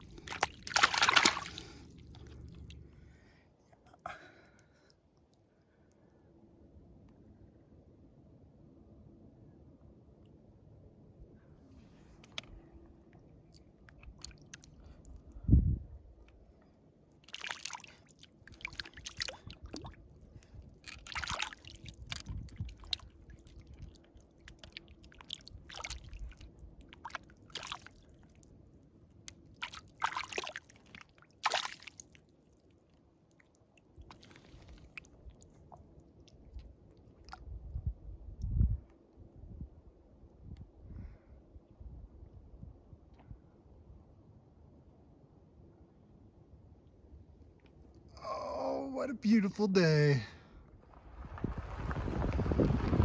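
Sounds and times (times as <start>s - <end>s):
water sloshing: 0.0s - 3.1s, 29.6s - 32.1s.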